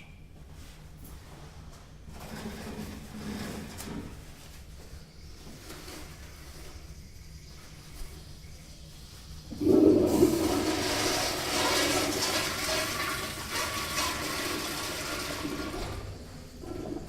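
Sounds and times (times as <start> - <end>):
toilet flushing: 9.2 - 17.0.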